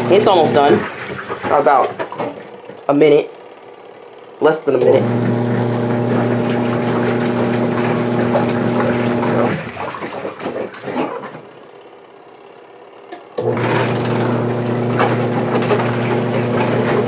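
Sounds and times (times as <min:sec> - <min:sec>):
water sloshing: 0:00.0 - 0:02.9, 0:05.1 - 0:11.7, 0:13.8 - 0:17.0
washing machine motor humming: 0:00.0 - 0:17.0.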